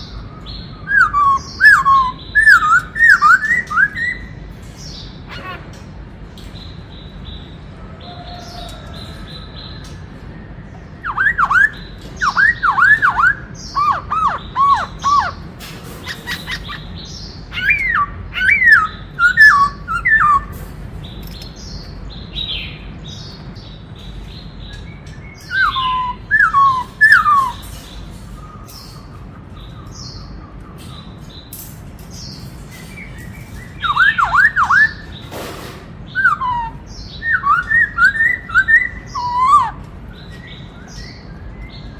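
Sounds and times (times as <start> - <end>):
bird whistled notes: 25.3 - 27.6.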